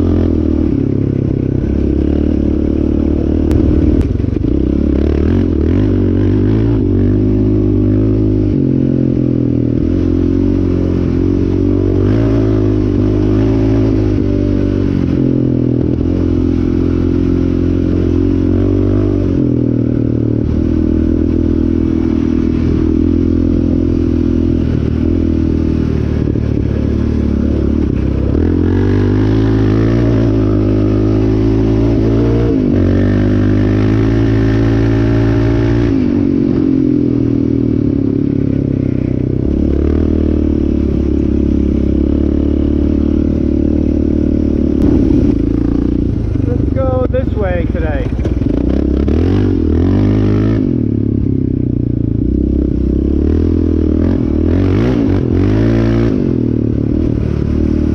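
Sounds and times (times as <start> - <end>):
quad engine running hard: 0.0 - 57.9.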